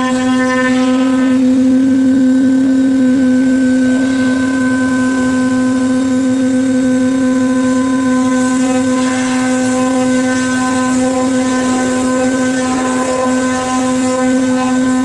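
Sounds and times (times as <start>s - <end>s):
machine running with high hum: 0.0s - 15.0s
rough machine noise: 0.0s - 15.0s.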